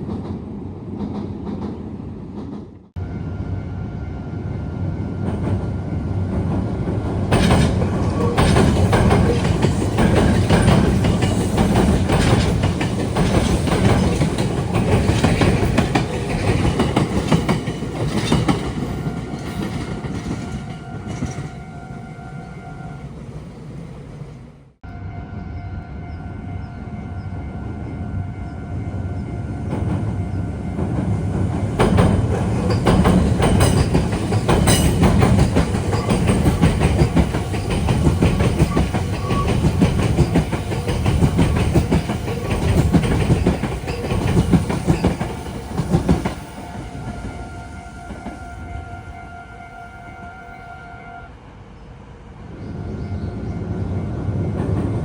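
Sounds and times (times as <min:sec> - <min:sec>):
train passing loudly: 0:00.0 - 0:55.0
train wheels clacking on rails: 0:05.3 - 0:21.6, 0:29.6 - 0:48.7.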